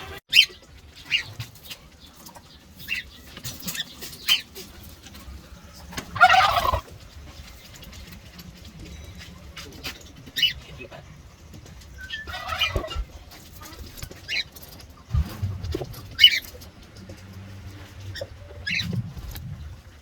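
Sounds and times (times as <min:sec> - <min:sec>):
cockatiels chirping: 0:16.2 - 0:16.6, 0:18.1 - 0:19.0.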